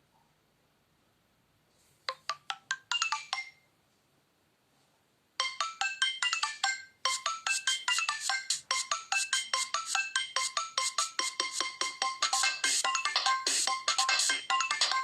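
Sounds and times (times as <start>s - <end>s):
bright plinking ringtone: 2.3s - 3.6s, 5.4s - 15.0s
chiming ringtone: 2.7s - 3.6s, 5.4s - 15.0s.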